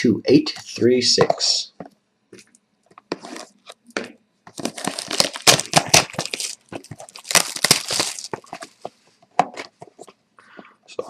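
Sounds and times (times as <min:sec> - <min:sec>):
plastic wrap crinkling and tearing: 0:04.5 - 0:08.9.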